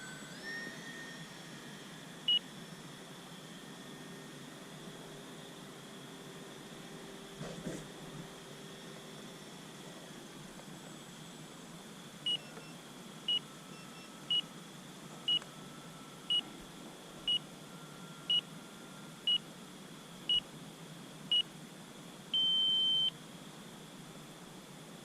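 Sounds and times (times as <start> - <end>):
electronic beeps from transmitter: 12.3 - 14.4, 22.4 - 23.1.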